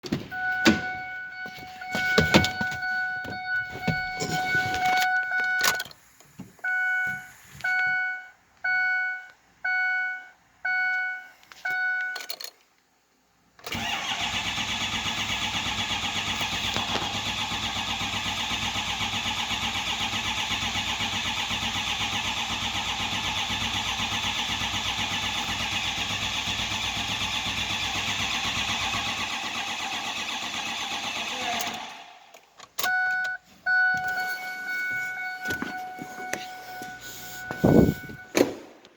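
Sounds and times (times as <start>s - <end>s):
diesel engine cranking: 0.0s - 6.2s, 13.6s - 38.6s
short beeps: 0.4s - 5.9s, 6.6s - 12.3s, 32.8s - 38.4s
electronic chime tone: 33.9s - 38.3s.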